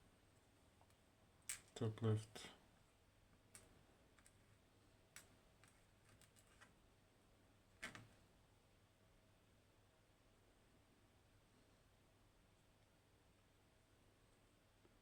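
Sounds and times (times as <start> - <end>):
small clicks of lock parts: 3.5 - 4.4.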